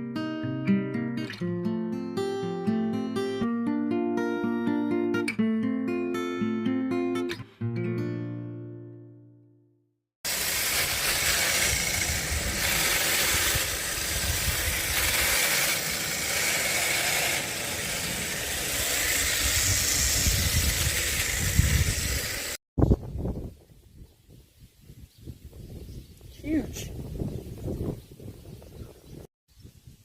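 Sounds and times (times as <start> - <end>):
small petrol engine running: 10.3 - 22.6.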